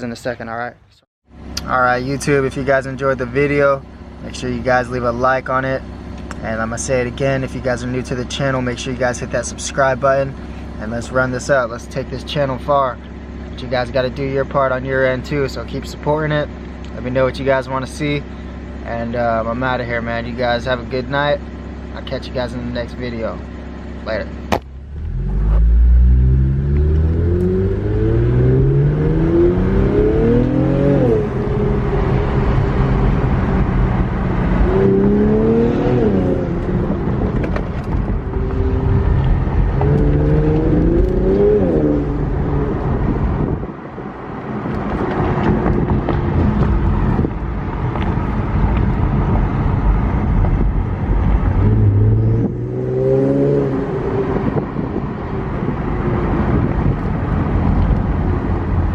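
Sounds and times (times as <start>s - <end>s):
car engine revving: 24.4s - 54.6s.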